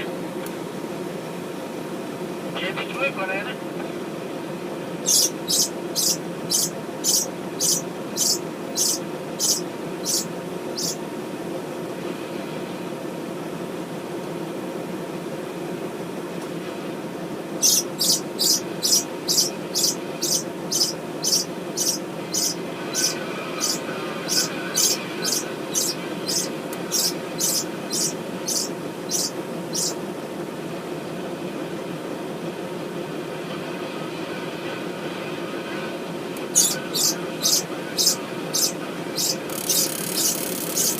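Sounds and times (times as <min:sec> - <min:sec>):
steady low hum: 0:00.0 - 0:40.9
bird chirping: 0:05.0 - 0:11.0, 0:17.6 - 0:30.0, 0:36.5 - 0:40.9.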